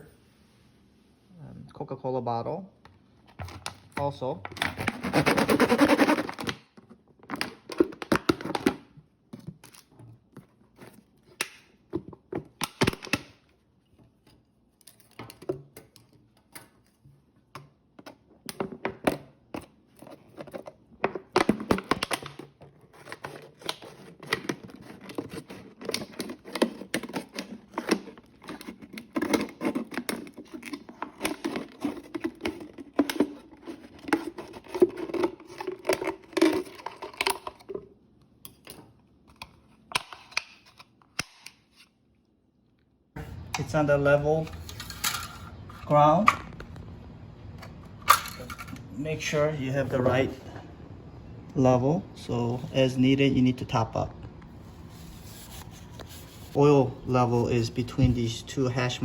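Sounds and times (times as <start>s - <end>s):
plastic bottle crinkling: 21.2s - 37.8s.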